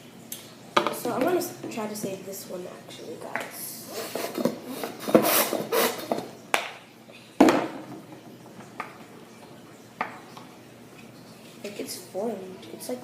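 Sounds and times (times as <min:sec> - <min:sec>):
utensil scraping a plate: 0:03.9 - 0:06.3.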